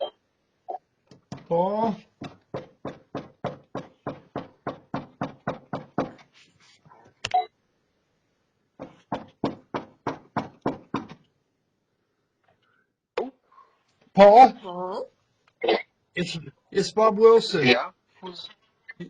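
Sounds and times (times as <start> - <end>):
knuckles knocking on door: 1.1 - 1.5, 2.2 - 6.2, 8.8 - 11.2.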